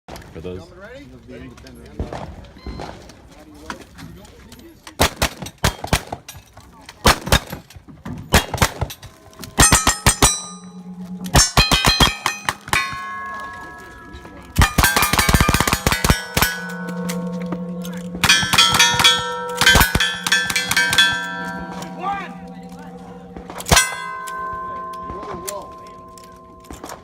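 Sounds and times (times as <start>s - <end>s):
steel targets clanging: 8.6s - 27.0s
rapid gunshots: 14.6s - 16.7s.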